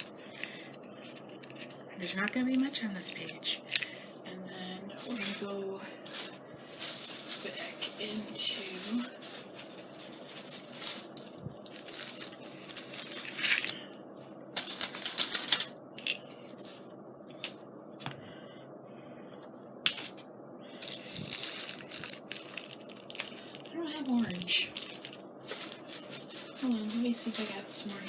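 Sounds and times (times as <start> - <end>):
paper and small items rustling: 0.0 - 1.9, 5.0 - 13.8, 14.6 - 16.7, 19.9 - 20.2, 20.8 - 28.0.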